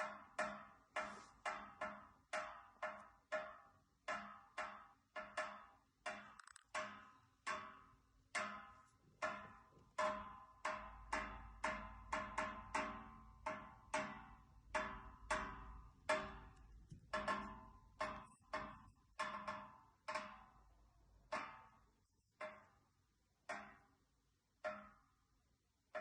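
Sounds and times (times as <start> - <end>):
radiator pipes knocking: 0.0 - 20.7.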